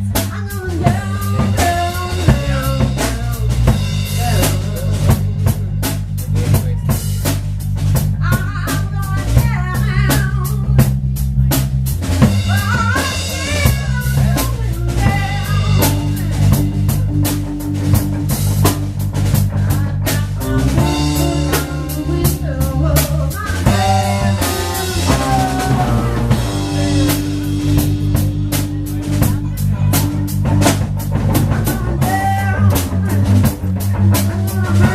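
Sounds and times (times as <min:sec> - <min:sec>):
bass line: 0:00.0 - 0:34.9
drum kit beat: 0:00.0 - 0:34.9
bending lead guitar line: 0:12.1 - 0:34.9.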